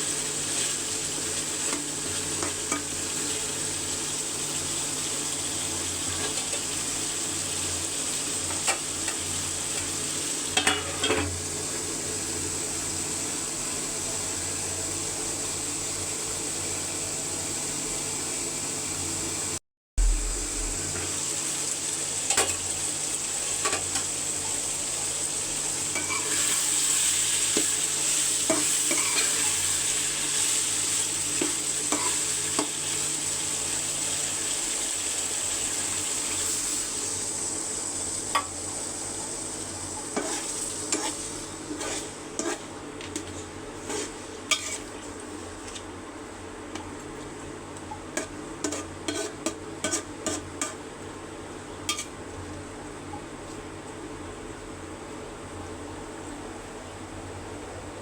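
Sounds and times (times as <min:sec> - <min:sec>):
curry sizzling in oil: 0:00.0 - 0:53.0
spoon scraping a pot: 0:40.2 - 0:44.9, 0:48.2 - 0:50.8.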